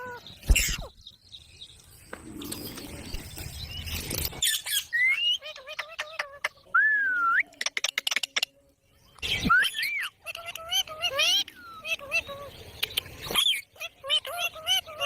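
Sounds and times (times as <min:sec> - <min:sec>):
parrot chirps and squawks: 0:04.4 - 0:06.6, 0:09.2 - 0:15.0.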